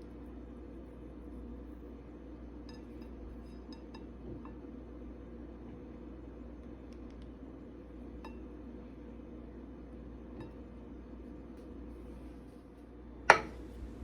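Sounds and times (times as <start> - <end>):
low room hum: 0.0 - 14.0
utensil clink: 13.3 - 13.7.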